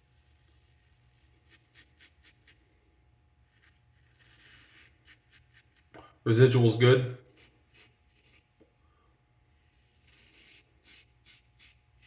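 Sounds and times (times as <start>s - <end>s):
razor scratching stubble: 0.0s - 2.7s, 3.4s - 5.9s, 6.6s - 8.6s, 9.6s - 12.0s.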